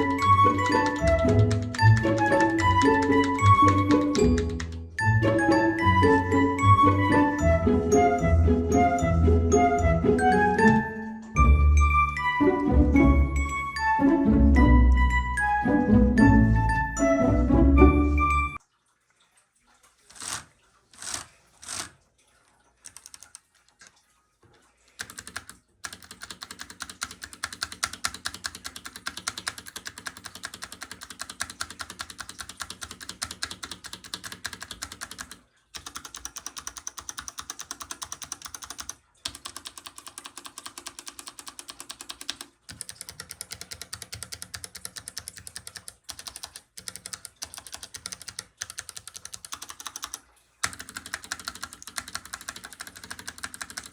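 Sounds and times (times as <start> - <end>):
mechanical keyboard key clacks: 0.1 - 4.8, 25.0 - 53.9.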